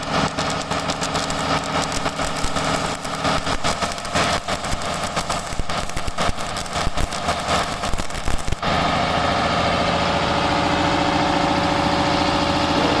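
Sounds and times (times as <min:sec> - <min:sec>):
electric arc welding crackling: 0:00.0 - 0:08.8
steady mechanical hum: 0:00.0 - 0:13.0.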